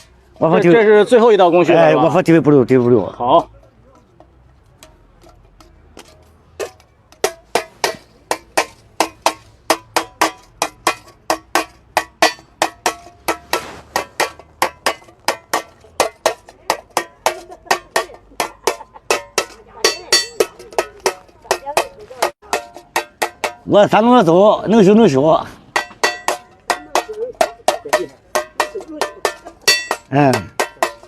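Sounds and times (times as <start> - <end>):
hammer ringing on sheet metal: 19.2 - 23.7, 25.8 - 31.0.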